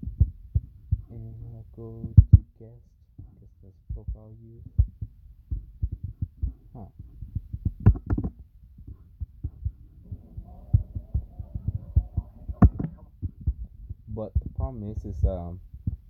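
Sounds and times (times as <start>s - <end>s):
faint hum: 0.0s - 16.0s
fingers tapping touchscreen: 5.6s - 14.0s
sharp knocks: 7.7s - 8.4s, 12.6s - 13.6s.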